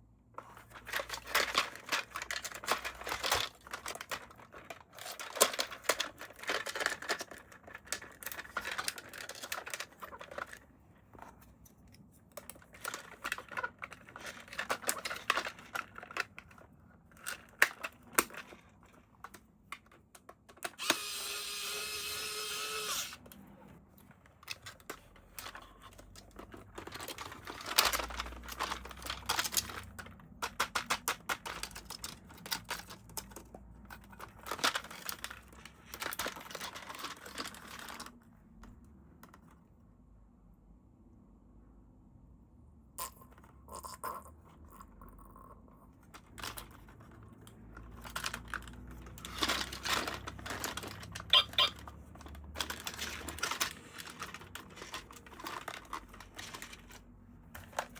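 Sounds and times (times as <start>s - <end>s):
plastic packaging crinkling: 0.5s - 10.7s, 24.4s - 38.2s, 46.4s - 57.9s.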